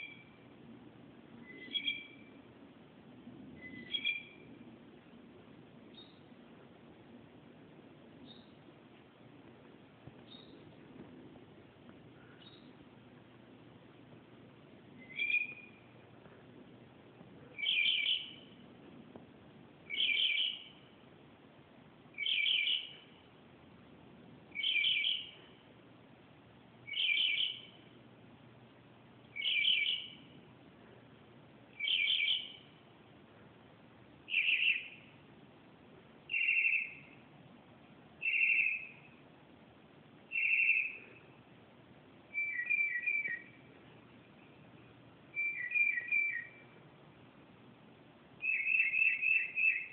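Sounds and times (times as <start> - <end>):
bird calling: 0.0 - 0.4, 1.4 - 2.4, 3.6 - 4.5, 15.0 - 16.0, 17.4 - 18.6, 19.9 - 20.8, 22.2 - 23.1, 24.5 - 25.6, 26.9 - 27.8, 29.3 - 30.4, 31.8 - 32.8, 34.3 - 35.2, 36.3 - 37.2, 38.2 - 39.2, 40.3 - 41.3, 42.3 - 43.7, 45.3 - 46.8, 48.4 - 49.9.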